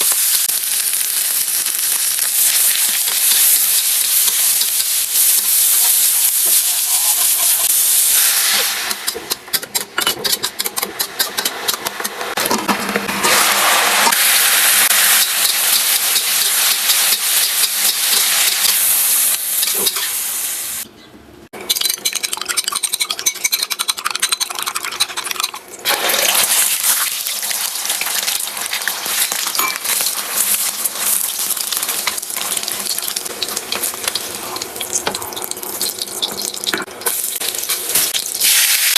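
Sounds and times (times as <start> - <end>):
vegetables sizzling in a pan: 0.0 - 9.2, 12.6 - 20.8, 25.8 - 38.9.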